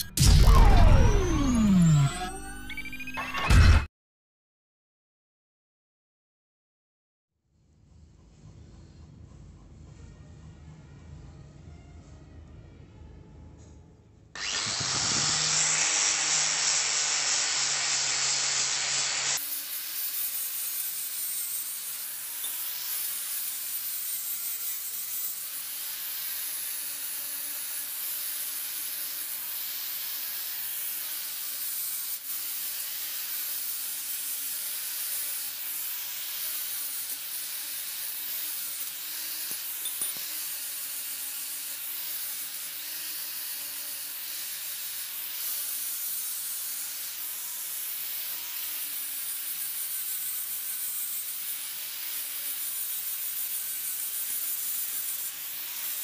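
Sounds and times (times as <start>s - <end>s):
sanding hiss: 14.7s - 56.0s.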